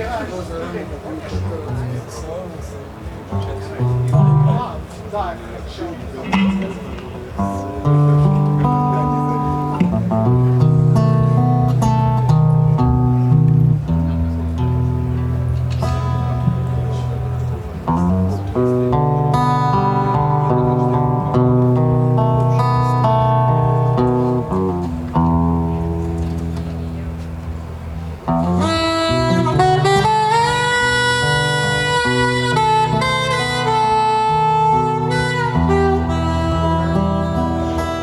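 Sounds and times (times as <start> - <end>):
guitar chords: 3.3 - 4.9, 6.1 - 38.0
bass line: 7.4 - 38.0
saxophone melody: 28.4 - 38.0.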